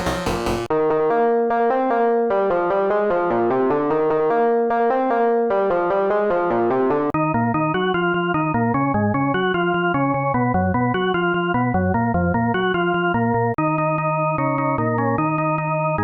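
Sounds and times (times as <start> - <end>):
held low synth chords: 0.0 - 0.7.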